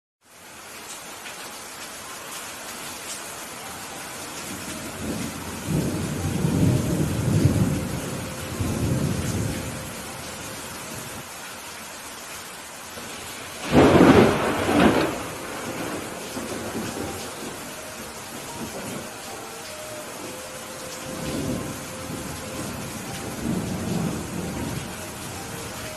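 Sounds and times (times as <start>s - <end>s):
steady rain hissing: 0.2s - 25.9s
low rolling thunder: 4.5s - 11.2s, 13.0s - 19.4s, 20.2s - 25.9s
sharp thunderclap: 13.6s - 17.5s.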